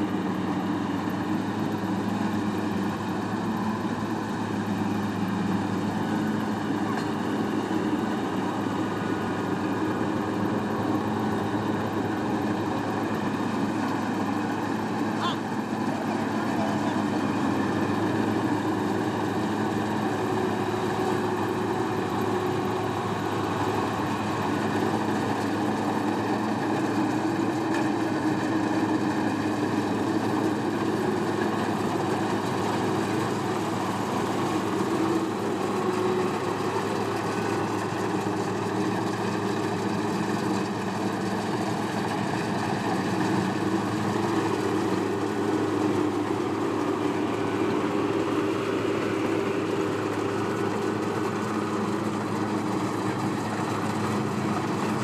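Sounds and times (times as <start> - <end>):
farm machine engine humming: 0.0 - 55.0.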